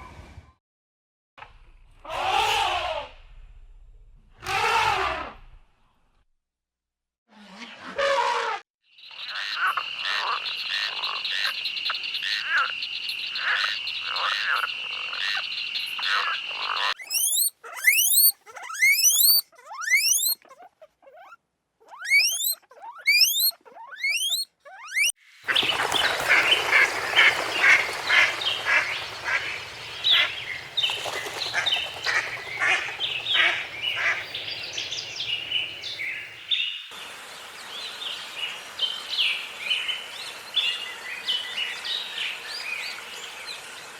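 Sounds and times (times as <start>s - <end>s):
quick rising chirps: 17.0s - 20.4s, 21.9s - 25.8s
chorus of overlapping chirps: 22.0s - 25.1s.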